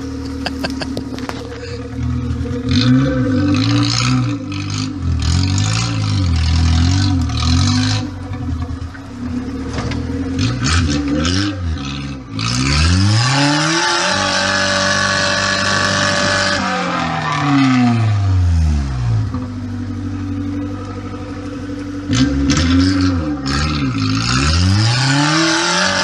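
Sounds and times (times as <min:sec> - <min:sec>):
engine revving: 0:00.0 - 0:26.0.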